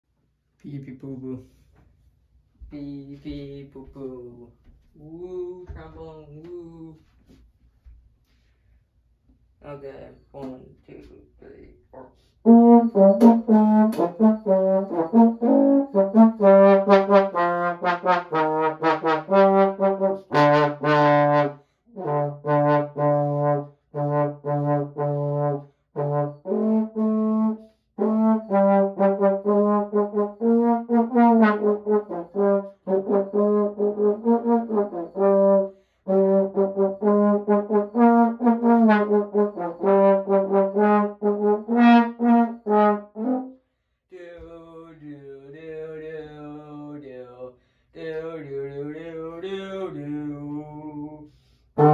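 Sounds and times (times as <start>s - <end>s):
solo trombone melody: 12.4s - 43.6s.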